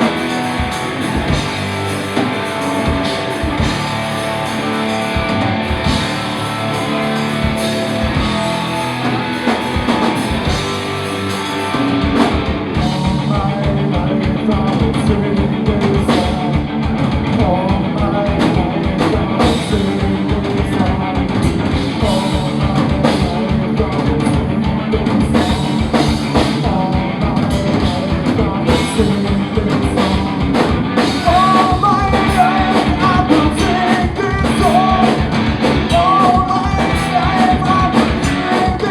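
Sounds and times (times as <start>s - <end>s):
drum kit: 0.0s - 38.9s
electric guitars: 0.0s - 38.9s
person singing: 12.7s - 38.9s.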